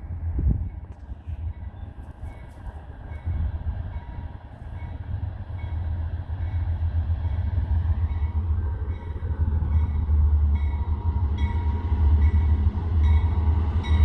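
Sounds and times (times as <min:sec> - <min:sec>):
diesel locomotives rumbling: 0:00.0 - 0:14.0.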